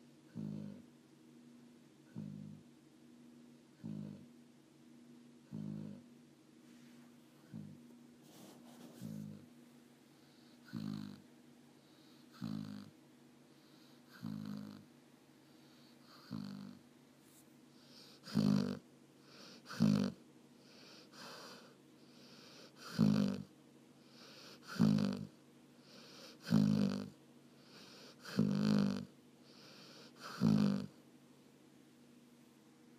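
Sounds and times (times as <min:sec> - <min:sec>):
dog snoring: 0:00.3 - 0:00.9, 0:02.0 - 0:02.7, 0:03.8 - 0:04.3, 0:05.4 - 0:06.1, 0:07.4 - 0:09.5, 0:10.2 - 0:16.8, 0:17.8 - 0:31.0
soft hissing breaths: 0:05.5 - 0:31.1.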